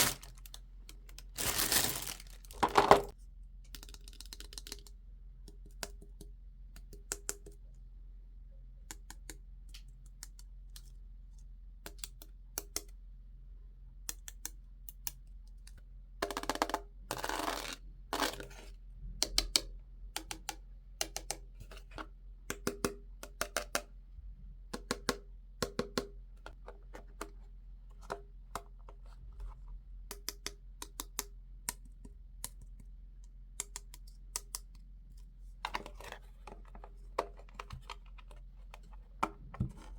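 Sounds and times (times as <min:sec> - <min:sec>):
packaging rustling: 0:00.0 - 0:00.6, 0:01.2 - 0:03.1.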